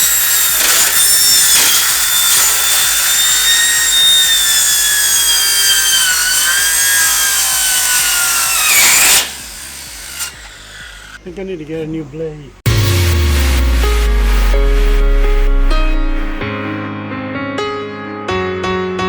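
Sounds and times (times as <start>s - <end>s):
power saw cutting sheet metal: 0.0s - 11.2s, 12.7s - 16.5s.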